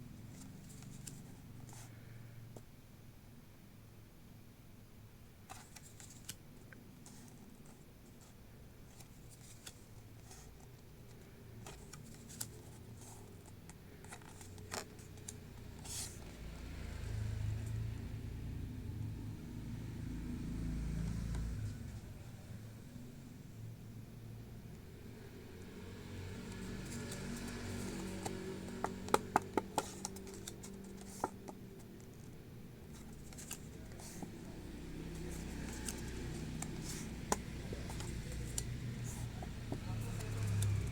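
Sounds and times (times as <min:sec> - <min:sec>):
card packaging clicks and rustles: 0:09.0 - 0:16.2, 0:26.4 - 0:32.2, 0:32.9 - 0:40.9.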